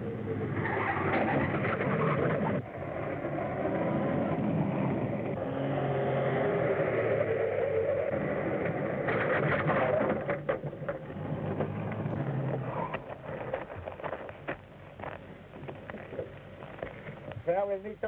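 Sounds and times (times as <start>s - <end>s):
old car engine running: 7.8s - 18.0s
scattered knocks and clatter: 9.0s - 17.4s.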